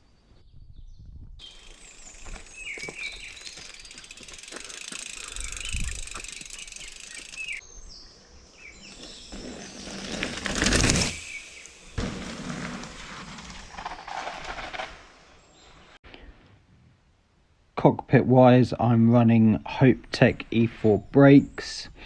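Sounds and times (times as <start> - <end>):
woodland ambience: 0.0 - 22.0.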